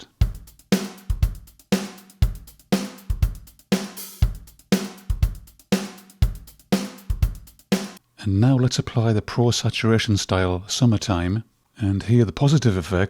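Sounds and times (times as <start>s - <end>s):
kick and snare drum loop: 0.0s - 8.0s.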